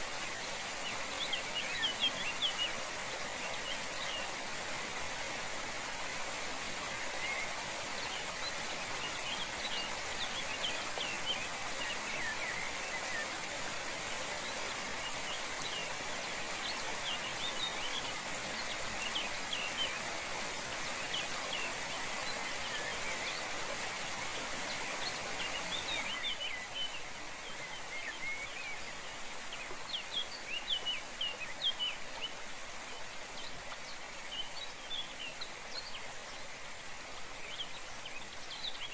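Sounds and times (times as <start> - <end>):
small birds chirping: 0.0 - 38.9
waterfall rushing: 0.0 - 38.9.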